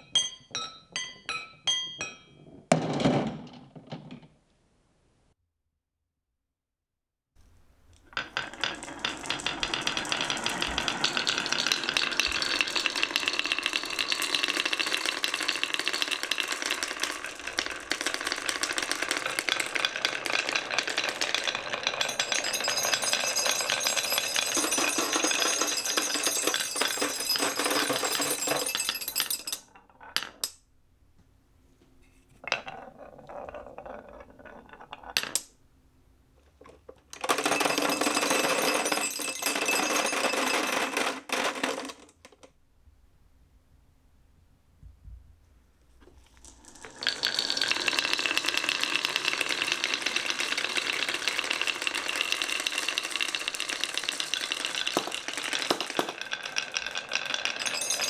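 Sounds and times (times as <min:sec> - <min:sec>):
marbles rattling down wooden tracks: 0:07.6 - 0:30.6, 0:36.7 - 0:42.5, 0:46.1 - 0:58.0
marbles striking metallophone bars: 0:08.2 - 0:29.7, 0:37.2 - 0:41.3, 0:46.6 - 0:58.0.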